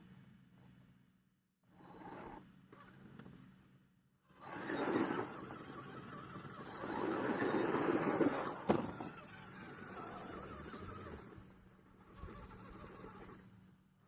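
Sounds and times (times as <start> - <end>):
high electric motor whine: 4.3 - 13.7.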